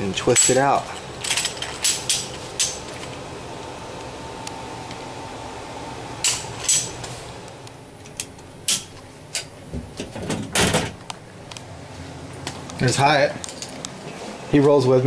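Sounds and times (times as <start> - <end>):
steady hum: 0.0 - 15.0
metal tools clinking and knocking: 0.2 - 3.2, 13.4 - 13.8.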